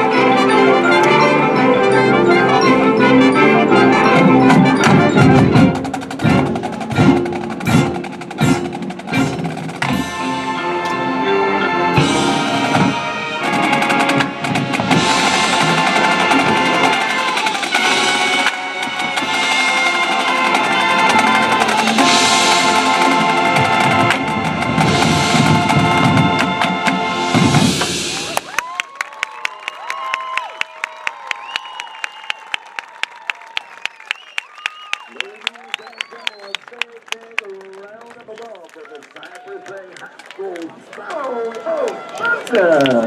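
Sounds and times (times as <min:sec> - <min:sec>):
marching band chords: 0:00.0 - 0:28.8
sharp percussion hits: 0:03.3 - 0:11.2, 0:12.0 - 0:28.5.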